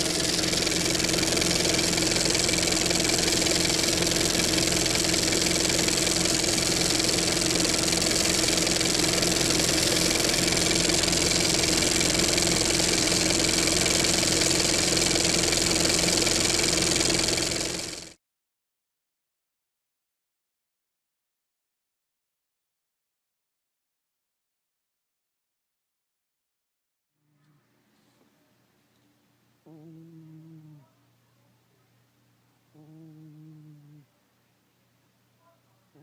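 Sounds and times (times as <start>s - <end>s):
machine hum with held tones: 0.0s - 18.2s, 28.9s - 34.2s.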